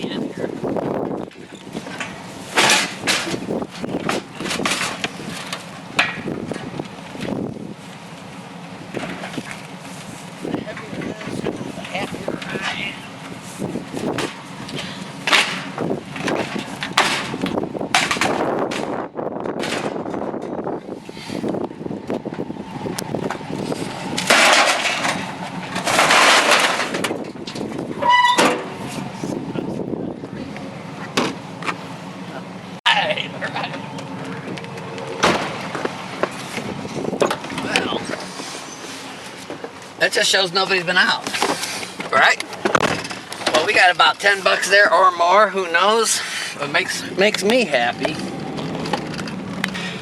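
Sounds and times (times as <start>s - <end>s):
metal knocks and clunks: 1.3s - 7.4s, 15.2s - 20.6s, 24.1s - 28.8s, 35.1s - 38.2s, 41.2s - 43.7s
scrap metal scraping: 23.5s - 29.4s, 35.1s - 39.6s, 41.2s - 42.1s
high-pitched metal squeak: 28.0s - 28.8s.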